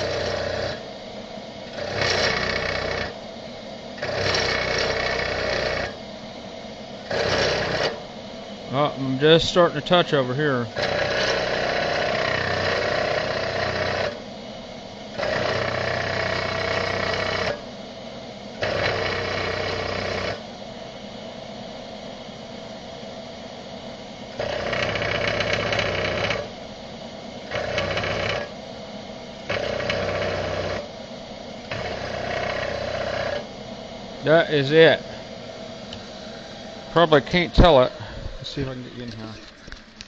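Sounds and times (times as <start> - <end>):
spindle hum: 0.0 - 40.0
milling cutter ringing on metal: 18.6 - 20.4, 24.4 - 26.5, 27.5 - 28.5, 29.5 - 30.8.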